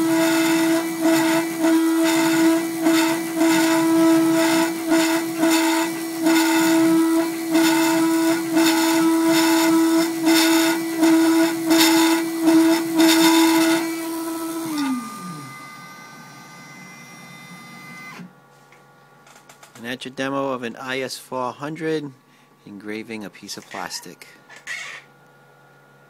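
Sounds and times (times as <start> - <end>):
cutter cutting plastic: 0.0 - 15.3
engraving spindle whine: 0.0 - 18.3.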